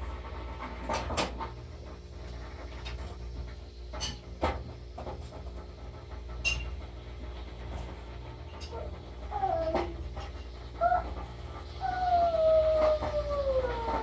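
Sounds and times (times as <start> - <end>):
steady low hum: 0.0 - 14.0
dog panting: 5.4 - 14.0.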